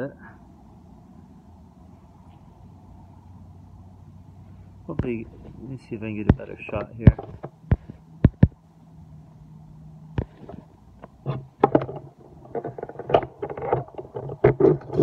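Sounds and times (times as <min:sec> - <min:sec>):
faint low hum: 0:00.0 - 0:15.0
small hard parts clicking: 0:10.2 - 0:15.0.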